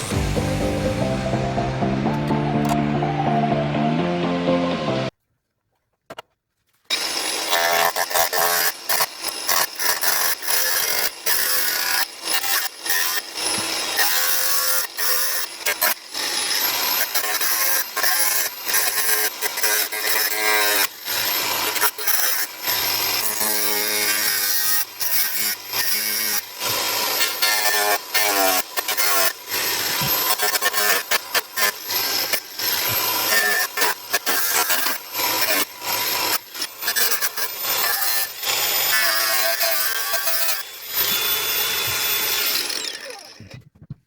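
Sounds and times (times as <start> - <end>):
power tool on sheet metal: 6.9 - 43.5.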